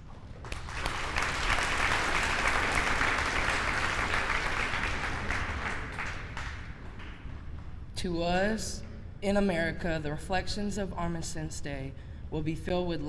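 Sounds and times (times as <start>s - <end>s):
audience applauding in a hall: 0.0s - 7.4s.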